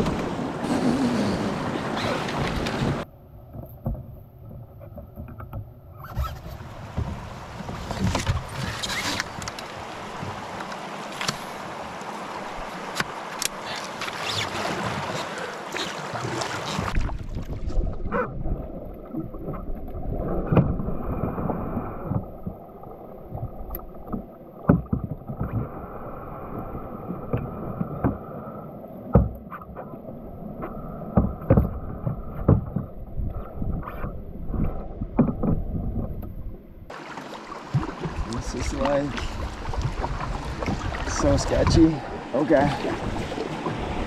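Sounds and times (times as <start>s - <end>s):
paddle knocks and splashes: 0.0s - 0.6s, 1.6s - 25.8s, 26.4s - 28.3s, 29.0s - 29.9s, 30.6s - 44.0s
wind rumble on microphone: 30.4s - 36.9s, 37.7s - 44.0s.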